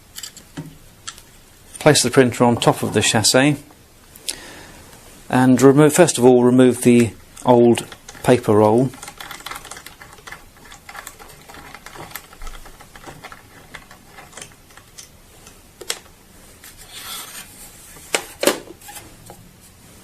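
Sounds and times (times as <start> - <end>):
plastic printer parts clicking: 7.4 - 16.1.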